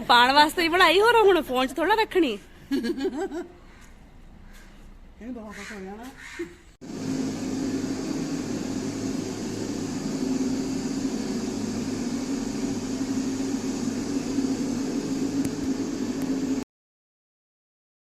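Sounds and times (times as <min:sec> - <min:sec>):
machine drone with hiss: 0:06.8 - 0:16.6.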